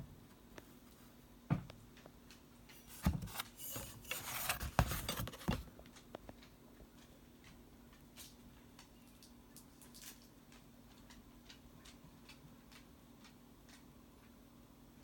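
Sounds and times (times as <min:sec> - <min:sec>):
handling knocks and clicks: 0:02.7 - 0:06.0
rubbing: 0:02.8 - 0:05.7.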